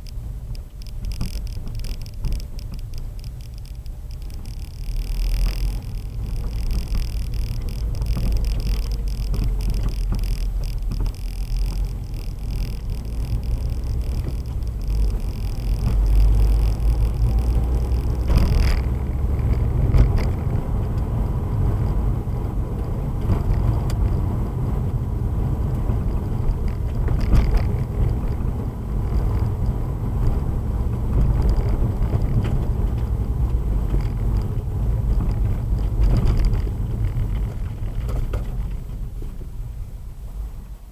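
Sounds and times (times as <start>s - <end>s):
car rumbling in motion: 0.0s - 40.9s.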